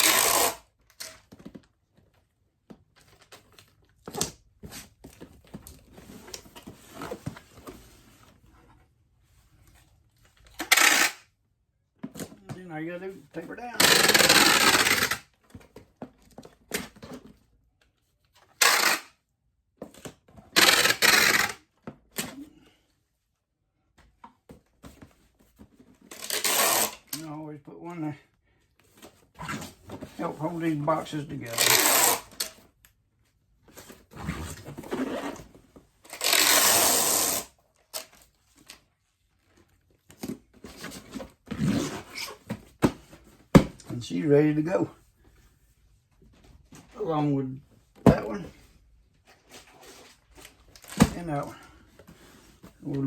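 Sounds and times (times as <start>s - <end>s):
packing tape screeching off roll: 0.0s - 1.2s, 10.6s - 11.3s, 13.8s - 15.2s, 18.5s - 19.2s, 20.5s - 21.6s, 26.1s - 27.2s, 31.4s - 32.5s, 36.1s - 38.1s, 50.8s - 51.2s
rustling and handling: 28.4s - 53.0s.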